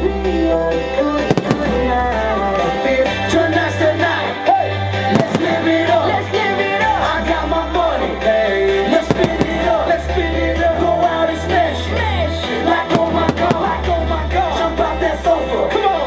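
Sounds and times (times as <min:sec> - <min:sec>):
song with singing: 0:00.0 - 0:16.0
firework bangs: 0:01.2 - 0:03.4, 0:05.0 - 0:06.6, 0:08.8 - 0:10.6, 0:12.8 - 0:14.6.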